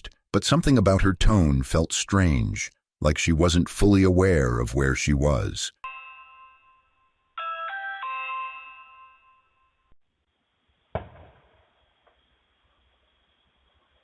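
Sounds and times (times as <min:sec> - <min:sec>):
electronic doorbell chime: 0:05.8 - 0:10.0.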